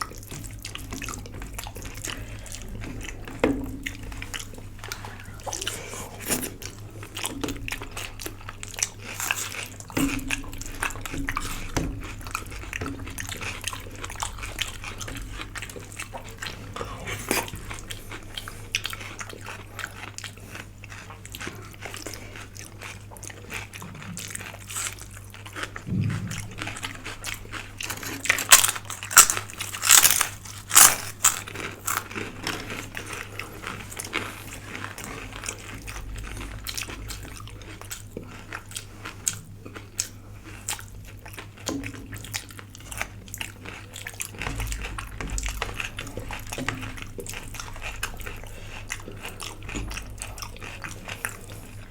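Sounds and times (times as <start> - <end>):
person chewing: 0.0 - 51.9
crunchy bites: 26.7 - 32.2.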